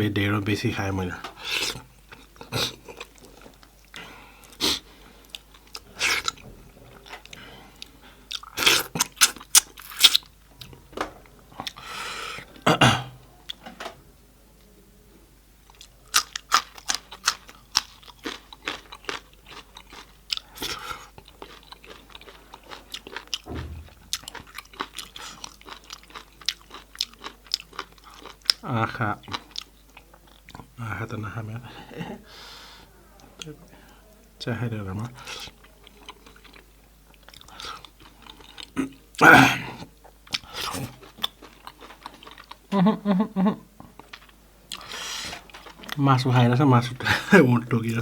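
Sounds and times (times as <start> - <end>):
wet chewing and crunching: 5.2 - 10.8, 15.7 - 30.7, 35.2 - 42.7.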